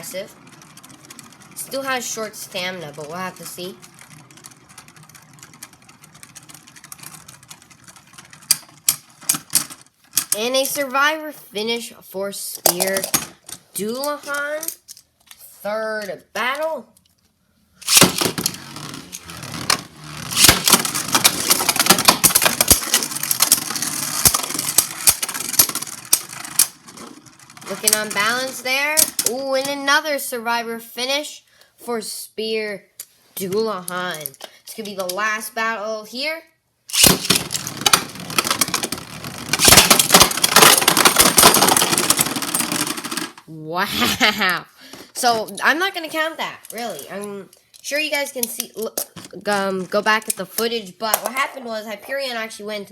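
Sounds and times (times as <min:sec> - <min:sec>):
spinning tops clashing: 0:00.0 - 0:10.4, 0:17.8 - 0:29.4, 0:36.9 - 0:43.4
spinning tops rattling whir: 0:00.0 - 0:10.9, 0:17.8 - 0:29.8, 0:36.9 - 0:43.4.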